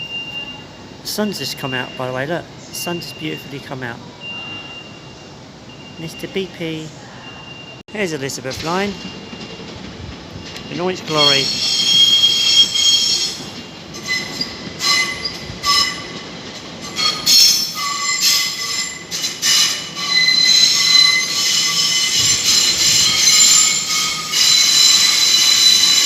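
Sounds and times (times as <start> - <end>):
train wheels squealing: 4.2 - 6.1, 10.4 - 16.2, 16.8 - 26.0.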